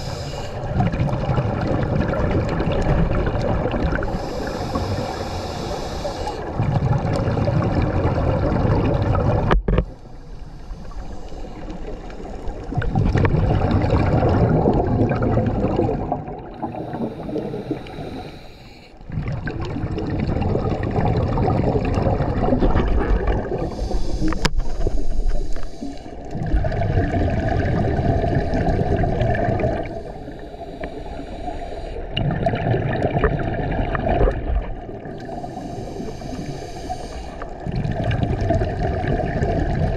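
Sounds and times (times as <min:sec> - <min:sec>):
diver breathing through regulator: 0:00.0 - 0:00.8, 0:03.9 - 0:06.6, 0:09.8 - 0:13.4, 0:16.5 - 0:19.6, 0:23.2 - 0:26.7, 0:27.9 - 0:32.2, 0:35.0 - 0:37.8
gurgling exhaled bubbles: 0:00.0 - 0:10.3, 0:10.9 - 0:39.9.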